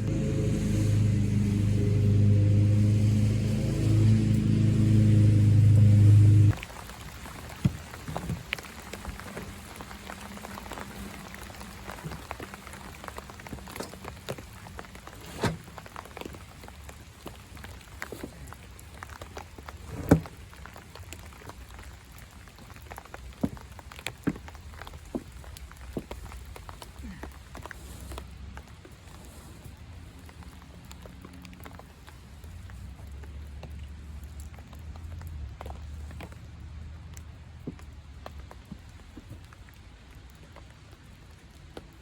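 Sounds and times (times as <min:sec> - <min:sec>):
loud low hum: 0:00.0 - 0:06.6
rain pattering: 0:00.0 - 0:42.0.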